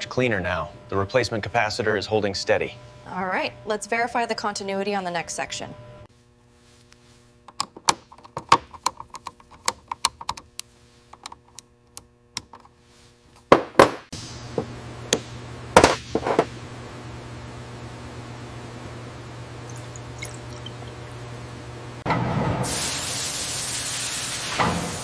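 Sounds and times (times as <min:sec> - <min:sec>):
steady low hum: 0:00.0 - 0:22.1
louder knocks: 0:13.5 - 0:14.1.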